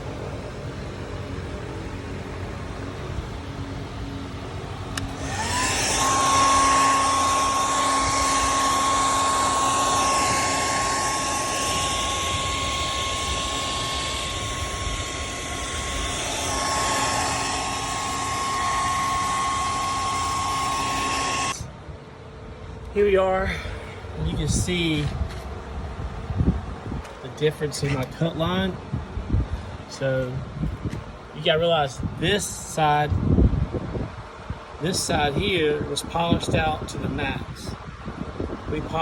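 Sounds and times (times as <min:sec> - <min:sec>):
electric motor whining: 0:01.2 - 0:21.7.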